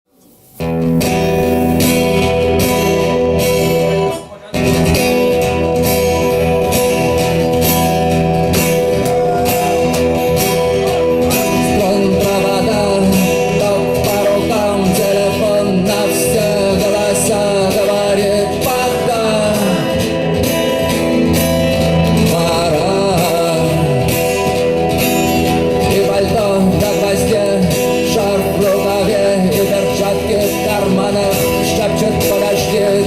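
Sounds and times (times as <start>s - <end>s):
acoustic guitar strumming: 0.3s - 33.0s
man singing: 8.6s - 21.0s, 21.9s - 33.0s.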